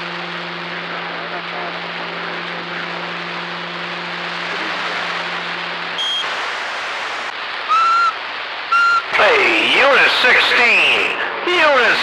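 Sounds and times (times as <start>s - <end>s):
low radio carrier hum: 0.0s - 12.0s
radio static hiss: 0.0s - 12.0s
short high radio beep: 6.0s - 6.3s, 7.7s - 11.2s.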